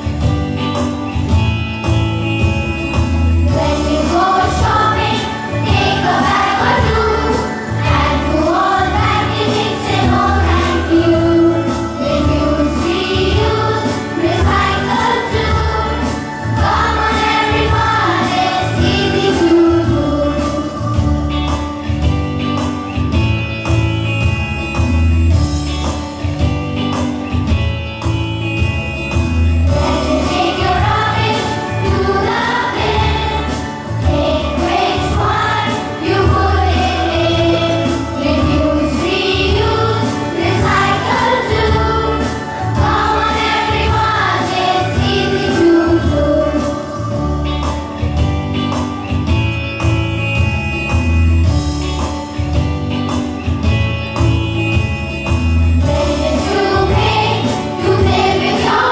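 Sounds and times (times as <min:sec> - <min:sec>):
backing track with steady beat: 0:00.0 - 0:58.9
children singing: 0:03.5 - 0:21.0, 0:29.7 - 0:47.3, 0:55.8 - 0:58.9.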